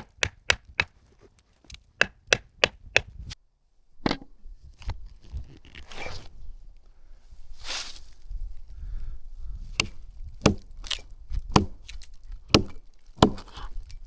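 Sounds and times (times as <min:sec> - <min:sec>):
hammer knocking axe in log: 0:09.8 - 0:10.7, 0:11.5 - 0:11.8, 0:12.5 - 0:13.6.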